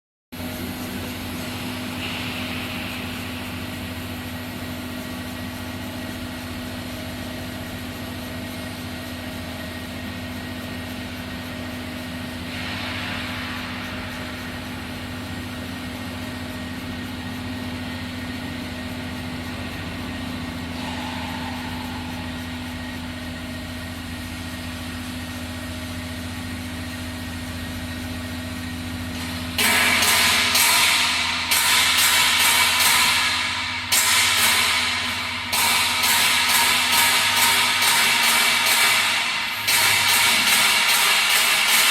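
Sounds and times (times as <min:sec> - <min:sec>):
machine motor humming: 0:10.3 - 0:29.6.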